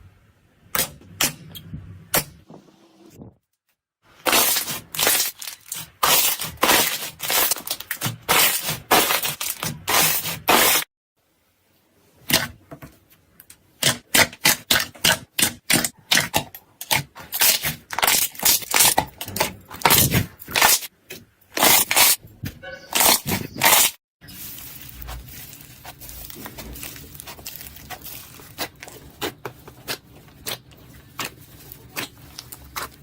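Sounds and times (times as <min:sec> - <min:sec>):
slime crackling and popping: 0:04.2 - 0:10.3, 0:23.0 - 0:33.0.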